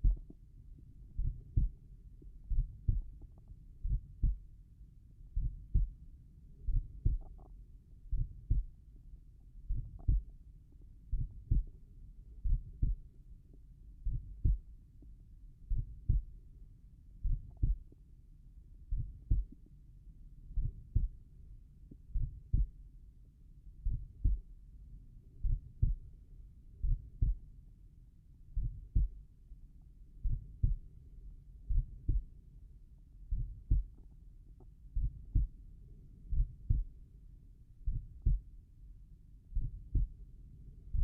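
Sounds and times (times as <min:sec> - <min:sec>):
heartbeat double thump: 0:00.0 - 0:00.4, 0:01.2 - 0:01.8, 0:02.4 - 0:04.4, 0:05.4 - 0:05.9, 0:06.7 - 0:07.4, 0:08.1 - 0:08.7, 0:09.7 - 0:10.2, 0:11.1 - 0:11.7, 0:12.4 - 0:13.0, 0:14.1 - 0:14.6, 0:15.7 - 0:16.2, 0:17.2 - 0:17.8, 0:18.9 - 0:19.6, 0:22.2 - 0:22.7, 0:23.9 - 0:24.4, 0:25.4 - 0:26.0, 0:26.8 - 0:27.4, 0:28.6 - 0:29.1, 0:30.2 - 0:30.8, 0:31.7 - 0:32.2, 0:33.3 - 0:34.0, 0:35.0 - 0:35.6, 0:36.3 - 0:36.9, 0:37.9 - 0:38.5, 0:39.6 - 0:40.1.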